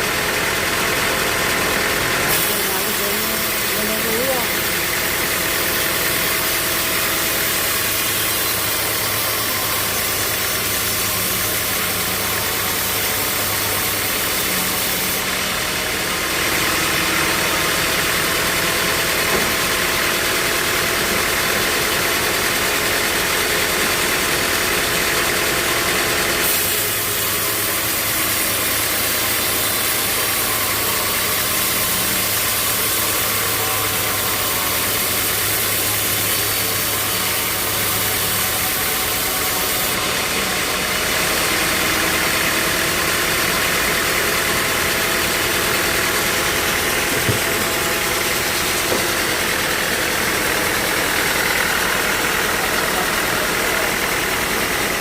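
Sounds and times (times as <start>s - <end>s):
engine hum: 39.9s - 55.0s.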